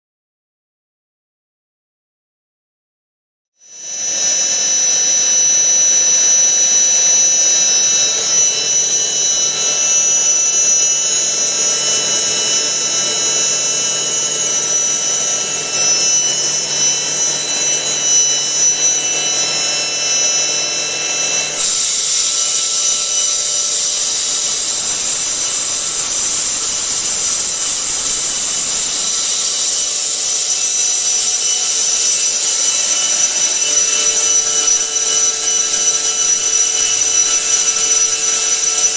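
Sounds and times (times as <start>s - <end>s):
mill whining over rushing hiss: 3.8s - 32.1s.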